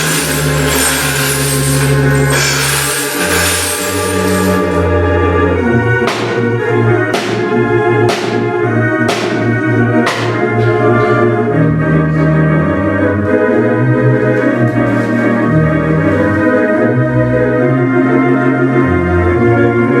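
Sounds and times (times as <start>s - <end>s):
sharp ringing hits: 0.0s - 4.9s, 6.1s - 10.9s
organ-like music: 0.0s - 20.0s.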